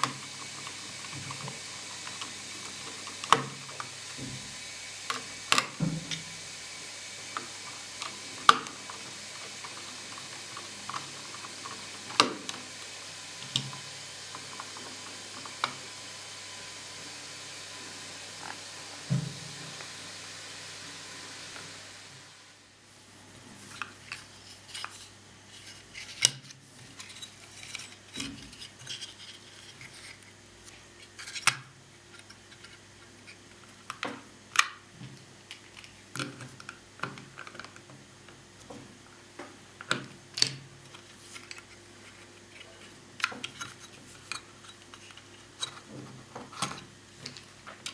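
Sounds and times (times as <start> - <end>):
steady hiss: 0.0 - 26.2.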